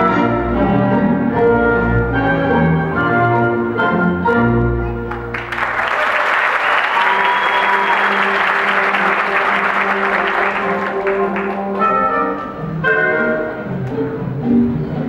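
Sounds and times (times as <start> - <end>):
audience applauding: 5.1 - 12.2.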